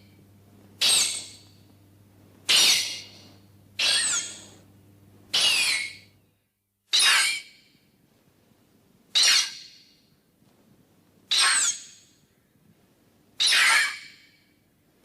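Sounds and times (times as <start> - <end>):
high-pitched monster squeaking cry: 2.5 - 3.0, 3.8 - 4.4, 13.4 - 14.0.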